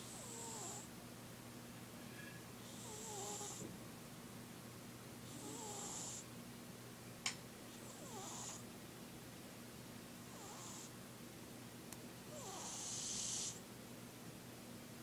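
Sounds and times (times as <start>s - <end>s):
pet snoring: 0.0s - 0.9s, 2.6s - 3.7s, 5.3s - 6.3s, 7.8s - 8.6s, 10.3s - 11.0s, 12.3s - 13.6s.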